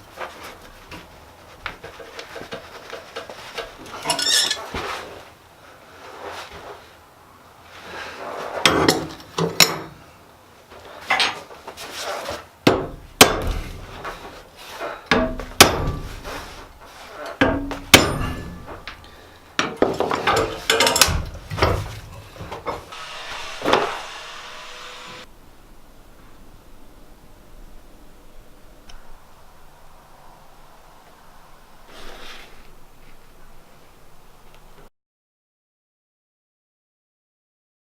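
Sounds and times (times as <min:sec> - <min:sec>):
hammer striking metal on anvil: 0:17.4 - 0:18.9.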